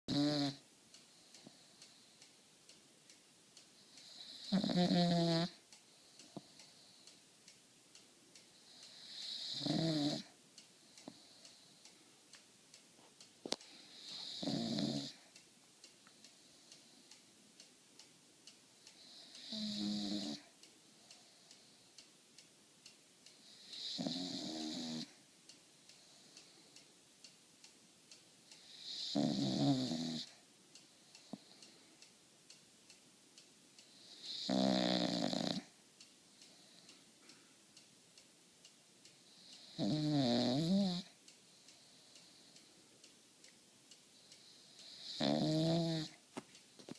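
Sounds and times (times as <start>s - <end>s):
dog snoring: 0.1s - 0.6s, 4.0s - 5.6s, 8.7s - 10.3s, 13.9s - 15.2s, 19.0s - 20.5s, 23.4s - 25.1s, 28.6s - 30.3s, 34.0s - 35.7s, 39.3s - 41.1s, 44.4s - 46.2s.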